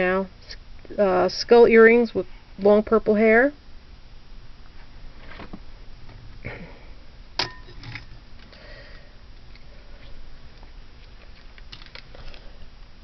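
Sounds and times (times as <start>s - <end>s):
metallic clink: 7.4s - 8.0s
beads rustling and clicking: 11.0s - 12.5s.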